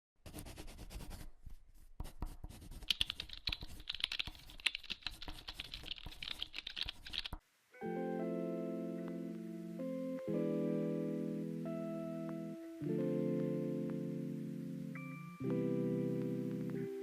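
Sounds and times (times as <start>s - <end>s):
typing on a computer keyboard: 2.7s - 7.4s
guitar background music: 7.8s - 17.0s.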